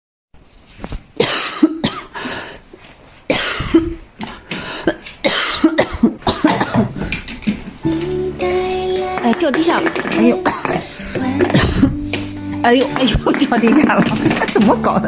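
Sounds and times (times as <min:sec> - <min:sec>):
person coughing: 0:01.2 - 0:02.2, 0:03.3 - 0:04.0, 0:04.8 - 0:07.0, 0:10.4 - 0:10.9, 0:11.5 - 0:12.0.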